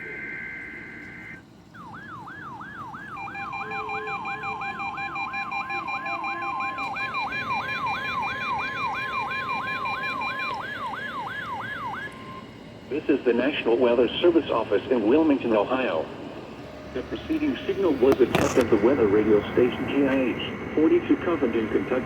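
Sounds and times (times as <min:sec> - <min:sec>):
rapid beeping: 0:00.0 - 0:16.0
steady warning alarm tone: 0:00.0 - 0:22.0
sweeping siren alarm: 0:00.0 - 0:22.0.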